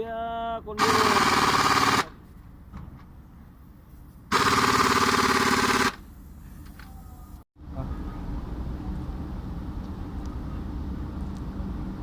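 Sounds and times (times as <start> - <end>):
pneumatic impact wrench rattling: 0.8 - 2.1, 4.3 - 6.0.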